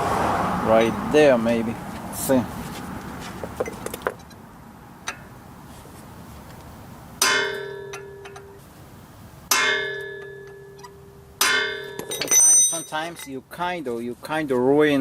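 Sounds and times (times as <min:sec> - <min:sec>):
hammer striking metal chisel: 0:07.2 - 0:08.6, 0:09.5 - 0:12.9.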